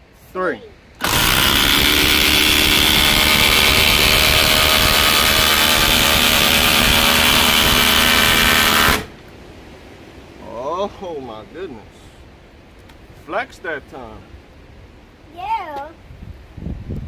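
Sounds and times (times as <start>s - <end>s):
impact drivers hammering: 1.0s - 9.1s.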